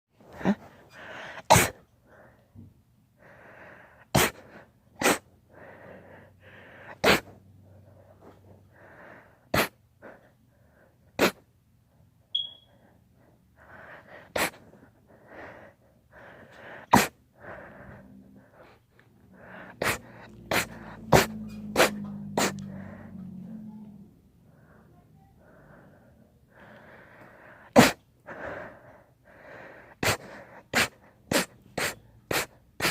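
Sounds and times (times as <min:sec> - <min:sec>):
breathy intakes: 0:00.3 - 0:11.4, 0:13.6 - 0:32.9
loud sneezes: 0:01.4 - 0:01.8, 0:04.1 - 0:05.3, 0:07.0 - 0:07.4, 0:09.5 - 0:09.8, 0:11.2 - 0:11.4, 0:14.4 - 0:14.6, 0:16.9 - 0:17.2, 0:19.7 - 0:22.8, 0:27.7 - 0:28.0, 0:30.0 - 0:32.9.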